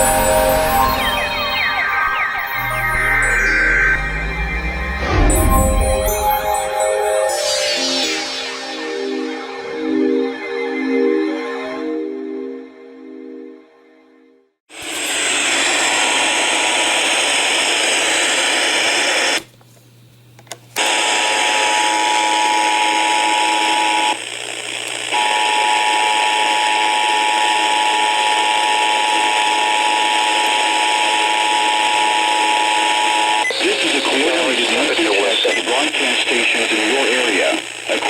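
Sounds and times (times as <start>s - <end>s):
two-tone alert signal: 0.0s - 9.4s
radio static hiss: 28.4s - 38.0s.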